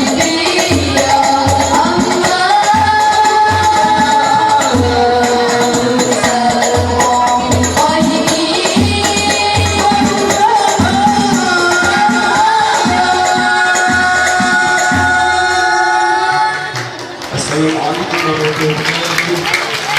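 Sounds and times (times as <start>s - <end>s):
voices singing in unison: 0.0s - 17.3s.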